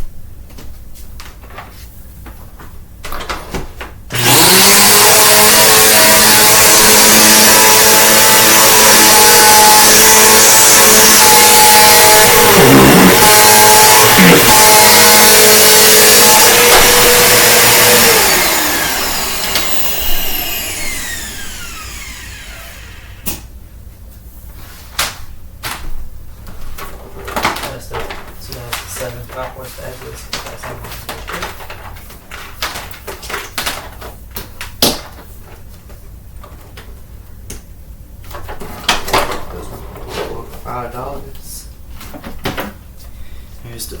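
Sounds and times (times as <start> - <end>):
vacuum motor winding down: 4.1 - 23.3
vacuum cleaner running: 4.1 - 23.4.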